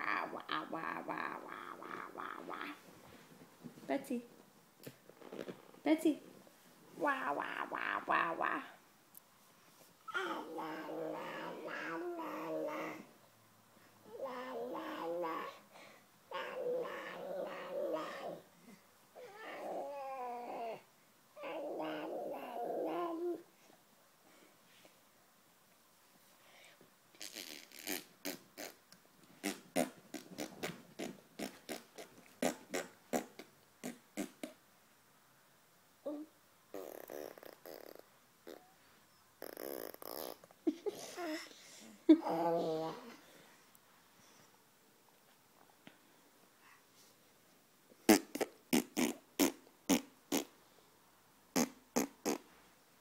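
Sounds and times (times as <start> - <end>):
person making sharp mouth noises: 0.0 - 2.8, 27.2 - 34.6, 36.1 - 38.8, 39.4 - 41.0, 48.0 - 50.6, 51.6 - 52.5.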